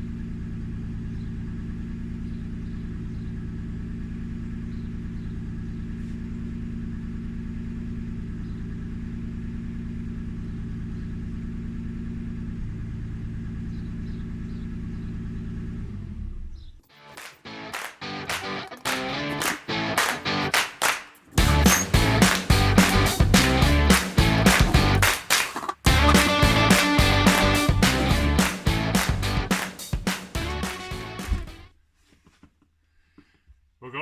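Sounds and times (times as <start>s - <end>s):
car engine idling: 0.0s - 16.5s, 21.4s - 31.5s.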